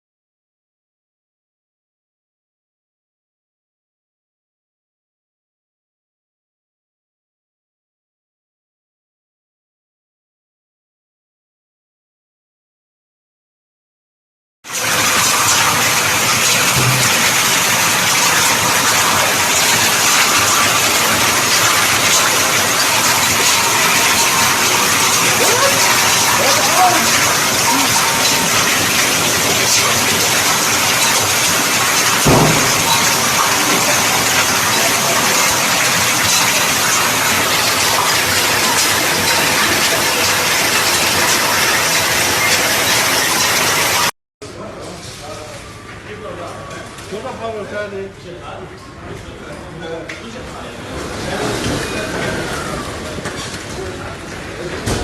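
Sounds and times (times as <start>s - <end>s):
heavy hail and rain pouring: 14.8s - 44.1s.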